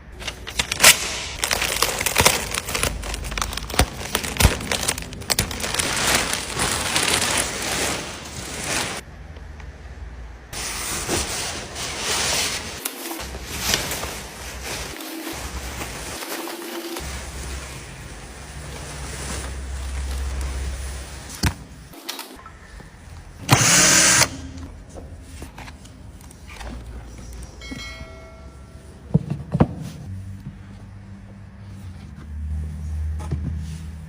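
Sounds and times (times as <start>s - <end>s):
packaging crinkling and rustling: 0.2s - 9.0s, 11.9s - 21.4s.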